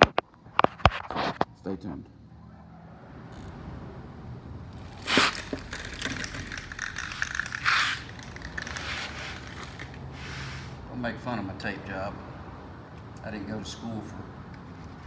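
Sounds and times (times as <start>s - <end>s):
crinkling and scraping handling noise: 0.0s - 1.5s, 4.8s - 10.8s.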